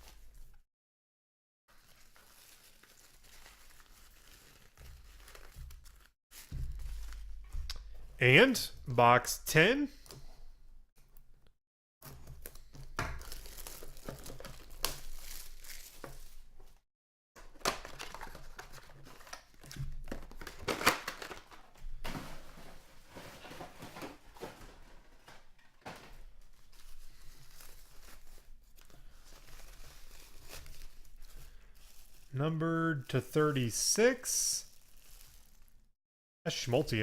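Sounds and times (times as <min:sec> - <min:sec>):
packaging being torn and crinkled: 0:01.7 - 0:07.1, 0:13.2 - 0:16.4, 0:17.5 - 0:21.7, 0:26.7 - 0:32.3, 0:34.7 - 0:35.9.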